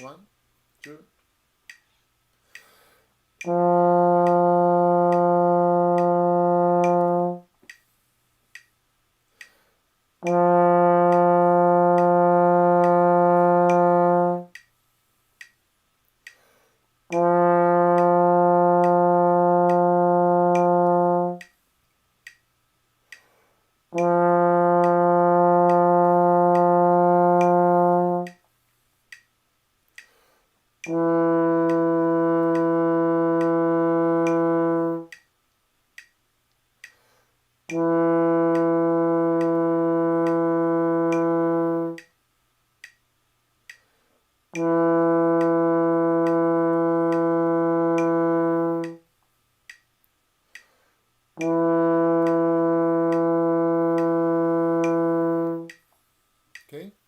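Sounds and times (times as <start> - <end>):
metronome clicking: 0.0 - 2.8, 3.4 - 7.9, 8.5 - 8.8, 10.2 - 14.8, 15.4 - 15.6, 17.1 - 21.6, 22.2 - 22.5, 23.1 - 23.3, 23.9 - 28.4, 29.1 - 35.3, 36.0 - 42.2, 42.8 - 43.9, 44.5 - 49.0, 49.6 - 50.8, 51.4 - 55.9
trombone sustained notes: 3.4 - 7.5, 10.2 - 14.6, 17.1 - 21.5, 23.9 - 28.4, 30.8 - 35.2, 37.7 - 42.0, 44.5 - 49.0, 51.4 - 55.8.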